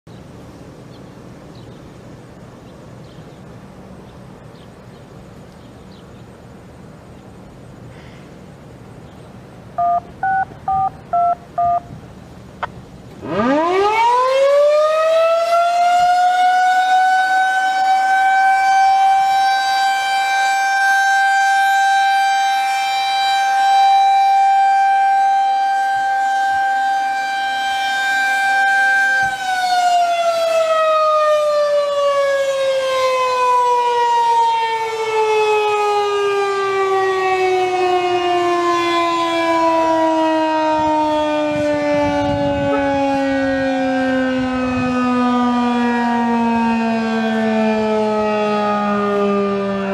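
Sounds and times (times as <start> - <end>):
outdoor warning siren: 9.7 - 49.9
short electronic beeps: 9.8 - 11.9.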